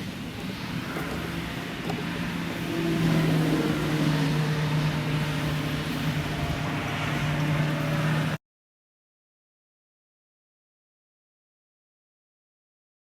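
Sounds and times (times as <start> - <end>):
engine running with low hum: 0.0 - 8.4.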